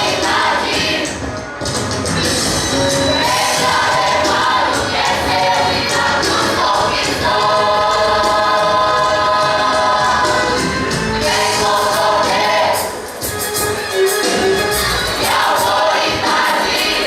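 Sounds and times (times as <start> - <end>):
gospel choir singing: 0.0 - 1.2, 3.1 - 13.1, 15.2 - 17.0
instrumental accompaniment: 0.0 - 17.0.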